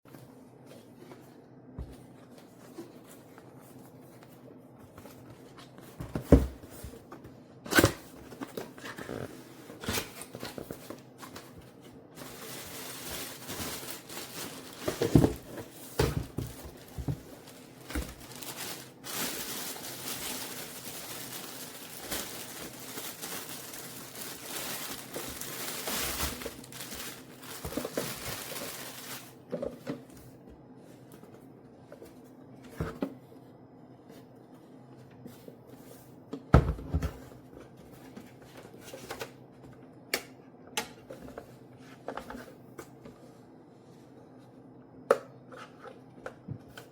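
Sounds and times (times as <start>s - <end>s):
plastic or paper crinkling: 10.2s - 29.5s
packaging knocks and bumps: 12.2s - 29.7s.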